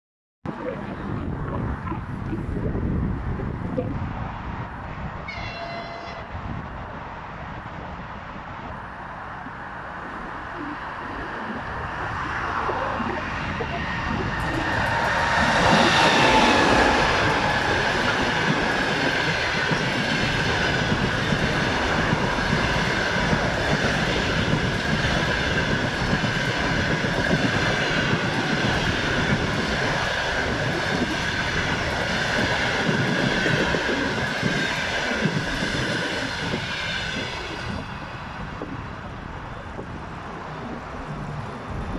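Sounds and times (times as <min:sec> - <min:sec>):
steady high whine: 0:08.4 - 0:41.9
train wheels clattering on rails: 0:13.6 - 0:38.8.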